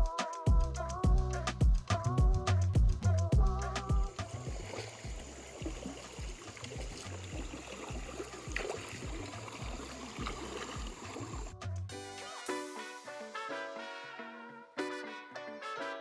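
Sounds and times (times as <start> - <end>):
background music with bass line: 0.0 - 7.0, 7.9 - 13.9
water trickling and splashing: 3.9 - 11.6.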